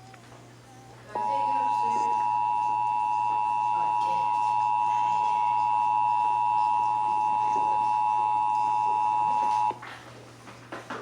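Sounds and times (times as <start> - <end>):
steady dual tone alert signal: 1.1 - 9.8.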